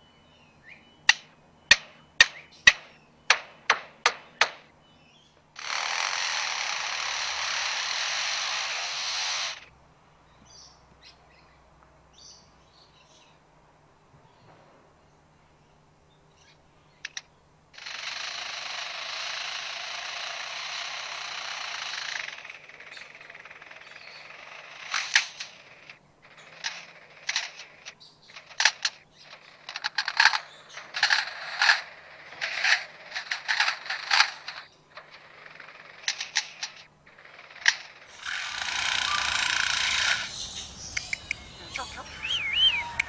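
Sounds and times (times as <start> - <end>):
bird mimicking clicks and bangs: 1.1 - 4.7, 37.5 - 43.0
bird mimicking hissing whir: 5.6 - 9.7, 38.1 - 43.0.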